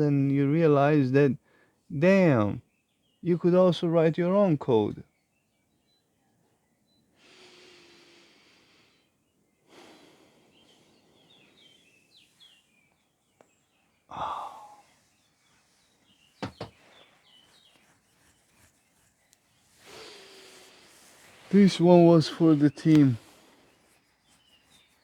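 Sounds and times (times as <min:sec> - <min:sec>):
small birds chirping: 0:00.0 - 0:25.0
person exhaling: 0:14.1 - 0:14.9.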